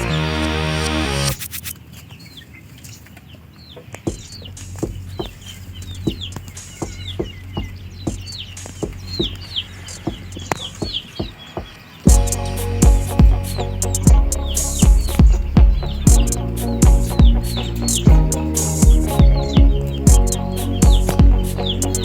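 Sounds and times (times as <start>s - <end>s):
high falling chirps: 12.1s - 22.0s.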